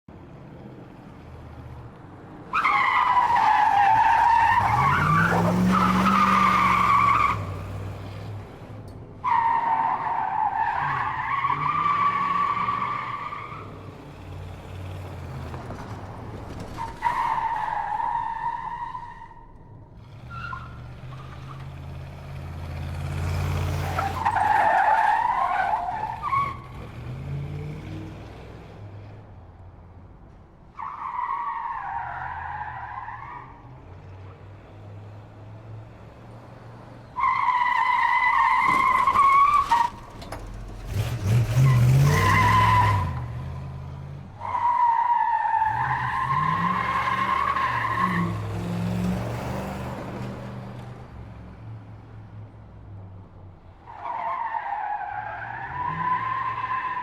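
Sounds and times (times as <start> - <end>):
car engine revving: 39.8 - 44.5.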